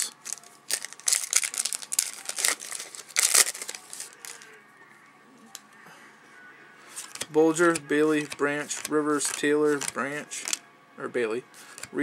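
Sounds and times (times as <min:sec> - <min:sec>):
wrapper ripping and crinkling: 0:00.0 - 0:04.4.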